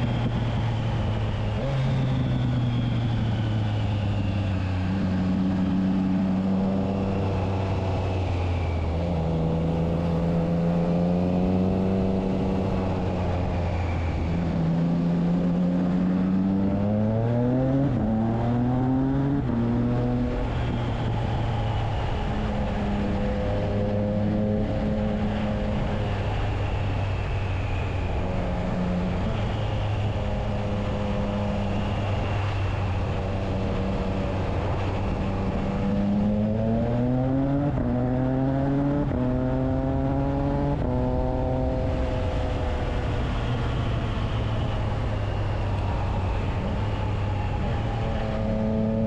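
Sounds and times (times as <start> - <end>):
motorcycle engine revving: 0.0 - 49.0
engine revs sweeping through gears: 33.0 - 44.8, 45.4 - 49.0.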